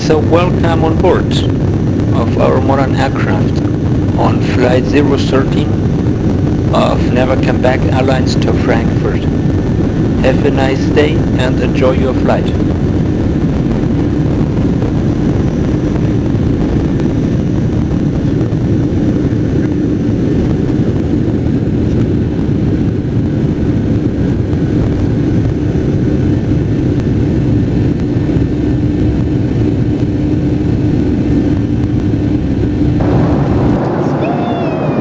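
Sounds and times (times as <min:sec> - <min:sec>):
airplane engine rumble: 0:00.0 - 0:35.0.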